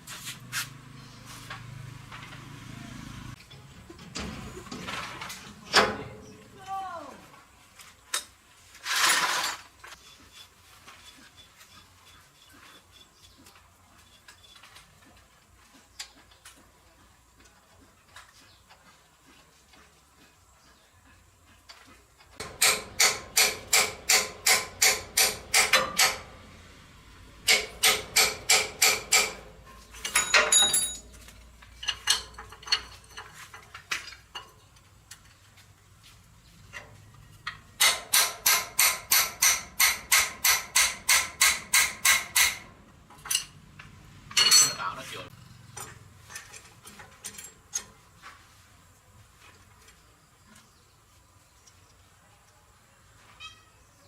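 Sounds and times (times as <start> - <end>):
hammer striking metal: 22.4 - 26.4, 27.4 - 31.1, 37.8 - 42.7.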